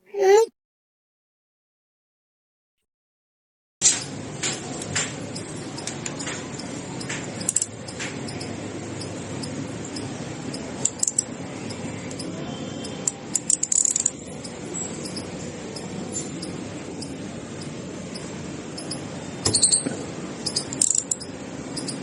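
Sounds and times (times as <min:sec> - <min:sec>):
steady background hiss: 0:04.1 - 0:22.0.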